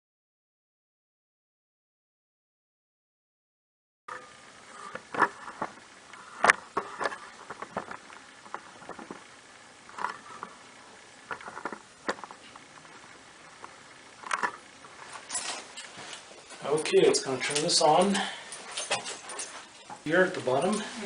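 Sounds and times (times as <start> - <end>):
clicks taps and rustles: 4.9 - 9.3, 11.2 - 20.9.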